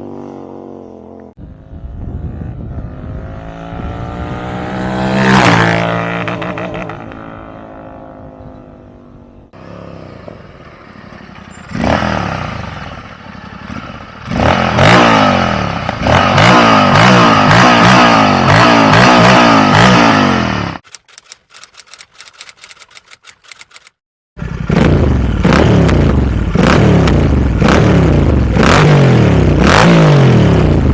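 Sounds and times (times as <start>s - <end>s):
motorcycle passing by: 0.0s - 20.8s
motorcycle engine revving hard: 1.5s - 8.2s, 11.5s - 20.8s, 24.4s - 30.9s.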